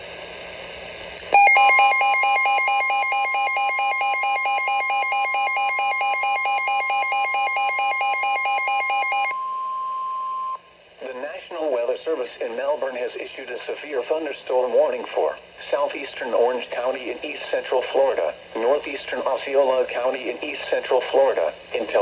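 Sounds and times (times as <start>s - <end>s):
rapidly warbling alarm: 1.4s - 9.4s
steady warning alarm tone: 1.4s - 9.9s
faint radio static: 11.0s - 22.0s.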